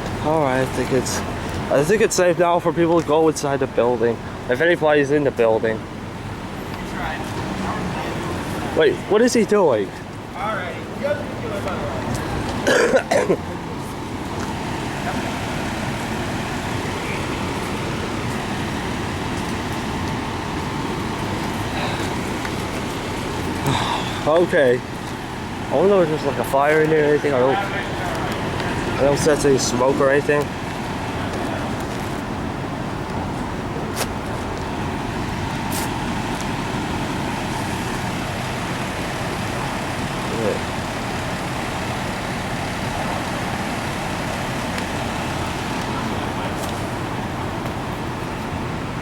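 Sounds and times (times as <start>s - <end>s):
road traffic rumble: 0.0s - 49.0s.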